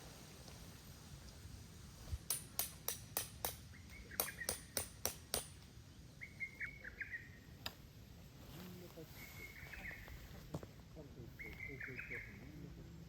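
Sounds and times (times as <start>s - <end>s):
small bird chirping: 3.6s - 4.8s, 6.2s - 7.5s.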